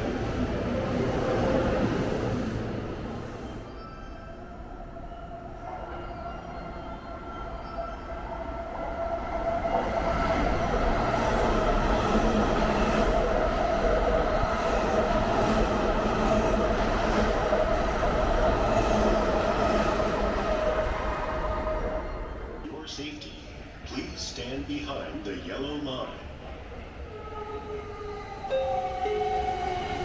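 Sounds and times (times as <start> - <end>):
train running on rails: 0.0 - 30.0.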